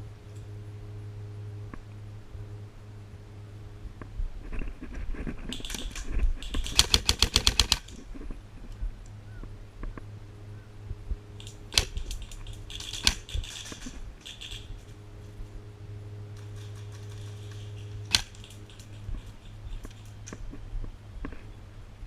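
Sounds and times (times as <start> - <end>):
rustling: 4.0 - 10.2, 11.3 - 21.6
airsoft gun shots: 5.6 - 8.0, 11.7 - 14.6, 18.1 - 18.6
light clattering: 16.3 - 20.6.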